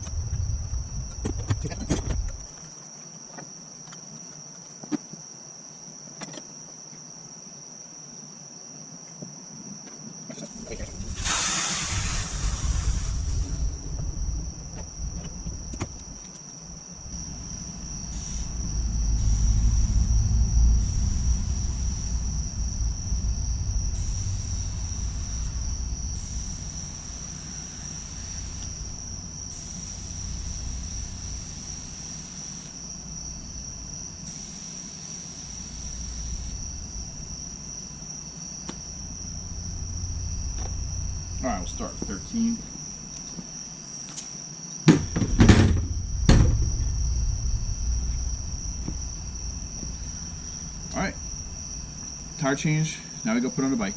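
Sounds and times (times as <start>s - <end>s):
low rumble: 0.0s - 2.5s, 11.9s - 31.3s, 38.8s - 42.2s, 45.3s - 52.4s
crickets chirping: 0.0s - 53.9s.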